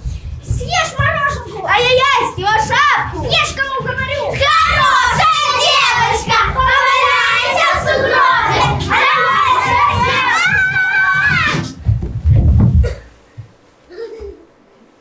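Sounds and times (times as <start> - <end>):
children shouting: 0.5 - 11.9.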